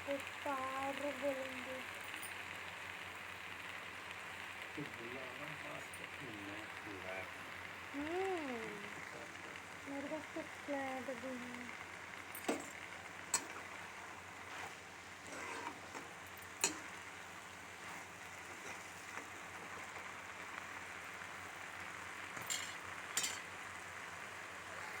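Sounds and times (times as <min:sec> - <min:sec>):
greens sizzling in a pan: 0:00.0 - 0:25.0
utensil clicking against pan: 0:12.4 - 0:13.7, 0:15.3 - 0:17.0, 0:22.4 - 0:23.5.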